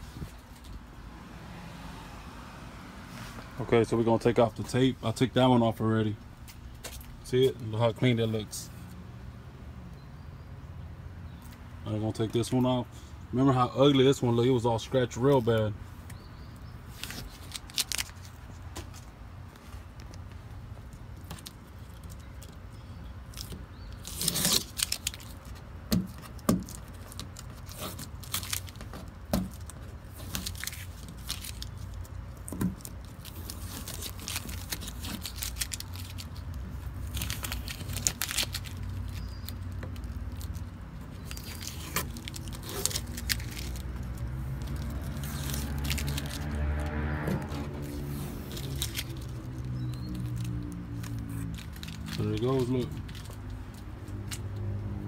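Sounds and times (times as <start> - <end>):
masking tape ripping off: 17.0 - 18.4, 23.3 - 54.6.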